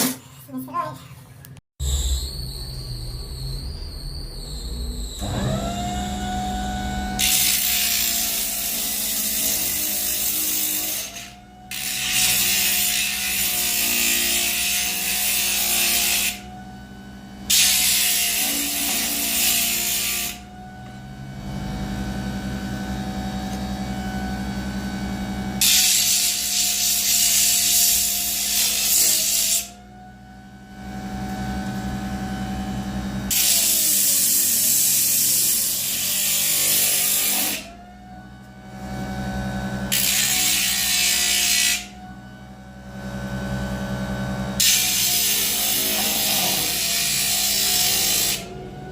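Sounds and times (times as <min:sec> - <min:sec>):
die grinder whining: 0:01.8 - 0:48.9
burr grinding wood: 0:43.1 - 0:48.9.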